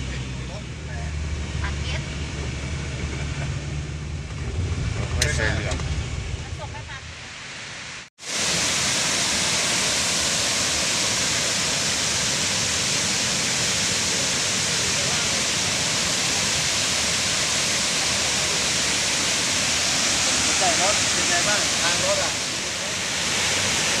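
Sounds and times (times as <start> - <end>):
waterfall rushing: 6.6 - 24.0.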